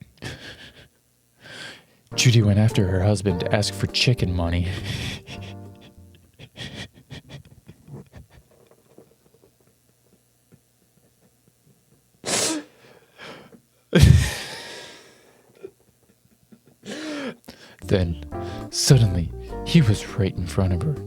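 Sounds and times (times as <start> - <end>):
person sneezing: 12.2 - 12.8, 14.0 - 15.0.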